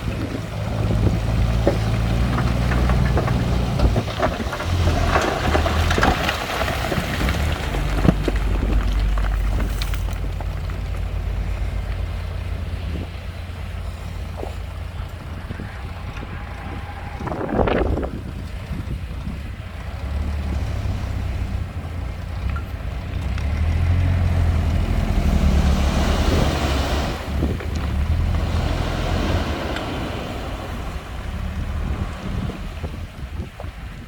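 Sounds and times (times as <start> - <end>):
diesel machinery rumbling: 0.0 - 34.0
loose stone rattling: 0.4 - 12.5.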